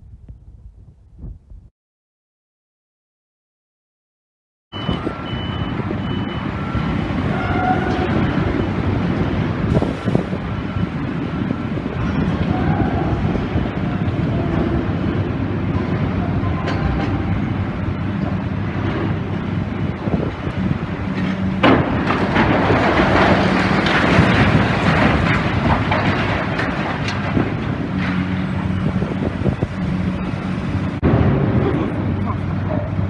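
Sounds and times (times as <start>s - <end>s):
excavator diesel engine running: 4.8s - 33.0s
debris crashing and clattering: 5.4s - 32.7s.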